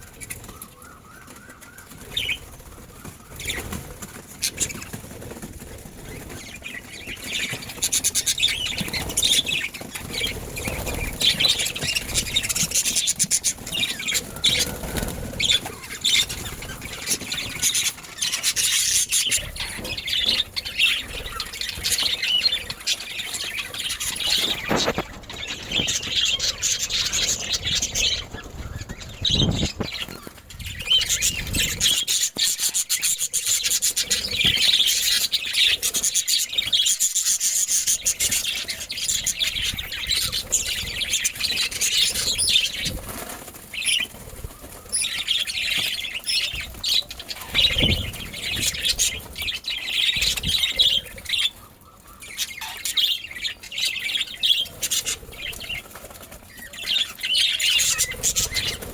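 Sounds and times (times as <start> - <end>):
budgerigars chattering: 6.1 - 43.0, 43.8 - 55.9, 56.5 - 58.9
rustling and scratching: 21.0 - 35.3.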